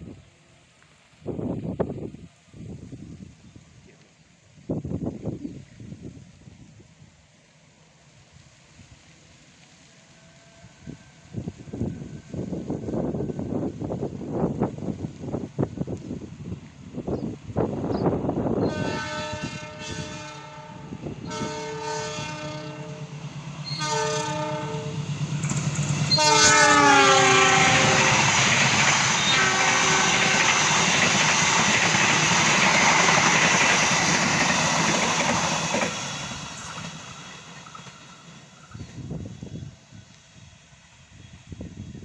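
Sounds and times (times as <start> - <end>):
locomotive horn blasts: 18.6 - 23.0, 23.7 - 25.0, 26.1 - 28.2, 29.2 - 30.4
train wheel clatter: 24.8 - 39.0.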